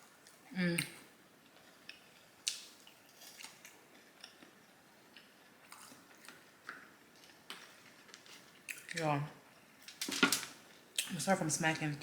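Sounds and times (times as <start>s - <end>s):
person chewing food: 0.0s - 9.0s.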